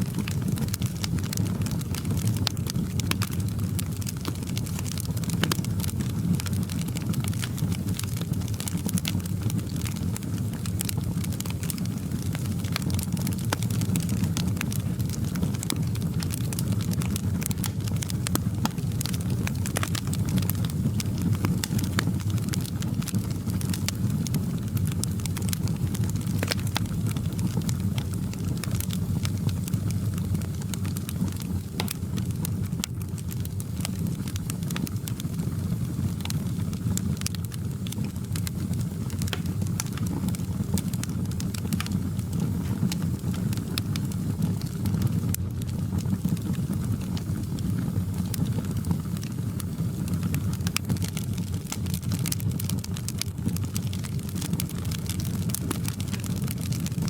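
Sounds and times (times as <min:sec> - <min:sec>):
wood fire crackling: 0:00.0 - 0:57.0.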